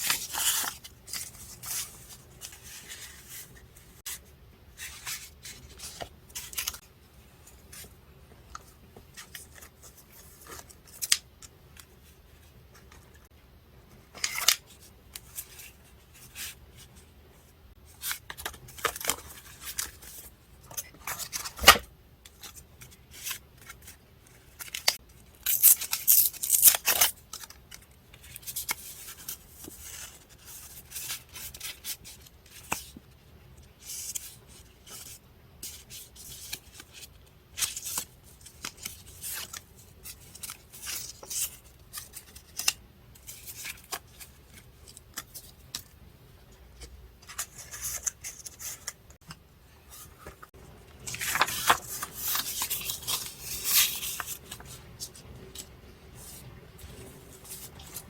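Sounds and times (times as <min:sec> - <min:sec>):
paper rustling: 0:00.0 - 0:06.8, 0:46.8 - 0:49.0, 0:49.8 - 0:58.0.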